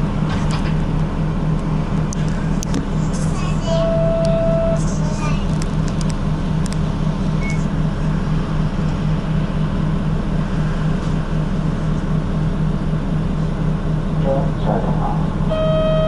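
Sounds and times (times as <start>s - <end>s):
bus engine hum: 0.0s - 16.0s
cabin rumble: 0.0s - 16.0s
short faint beep: 15.5s - 16.0s.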